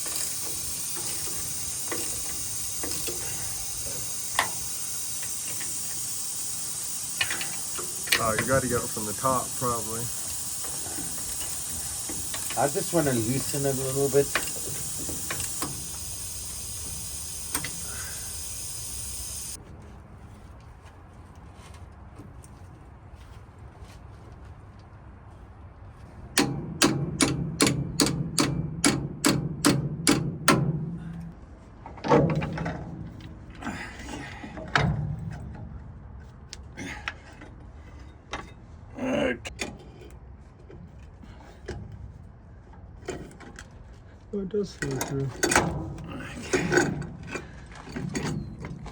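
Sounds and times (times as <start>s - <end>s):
compressed air hissing: 0.0s - 19.6s
metallic click: 17.4s - 17.9s.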